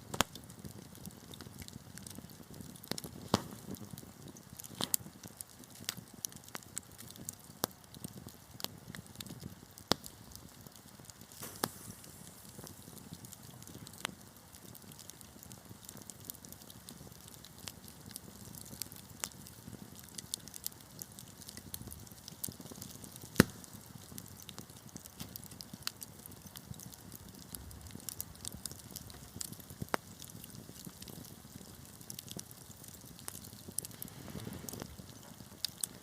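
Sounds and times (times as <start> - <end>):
fire crackling: 0.0 - 36.0
loud pop of fire: 2.0 - 5.1, 9.2 - 16.6, 21.5 - 26.0, 27.3 - 36.0
fire hissing: 8.5 - 36.0.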